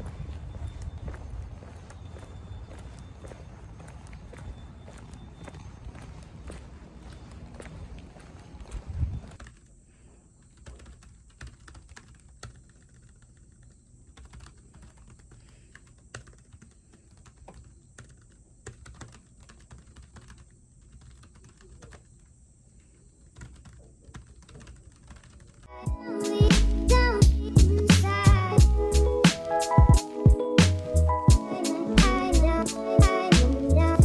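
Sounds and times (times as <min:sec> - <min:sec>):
computer keyboard typing: 0:04.0 - 0:09.7, 0:10.4 - 0:22.3, 0:23.2 - 0:25.7
music: 0:25.7 - 0:34.0.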